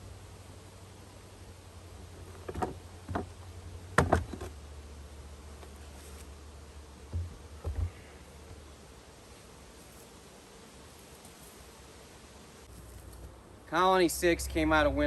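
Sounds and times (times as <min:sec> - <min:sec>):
low steady hum: 0:00.0 - 0:15.0
knocks of wooden beehive boxes: 0:02.1 - 0:04.6, 0:07.0 - 0:08.7.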